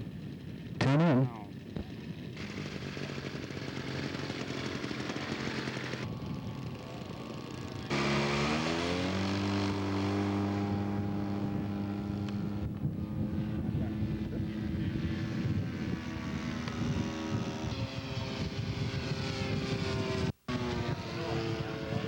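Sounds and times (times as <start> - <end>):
model airplane engine running: 0.0 - 22.0.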